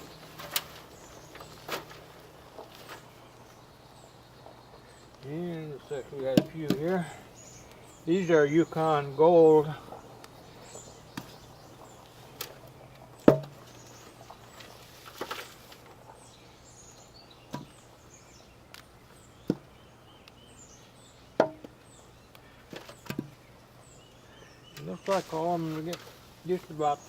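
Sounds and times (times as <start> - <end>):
potatoes knocking and thudding: 6.2 - 7.2, 11.0 - 12.6, 13.2 - 13.8, 17.5 - 17.8, 19.4 - 19.8, 22.7 - 23.4.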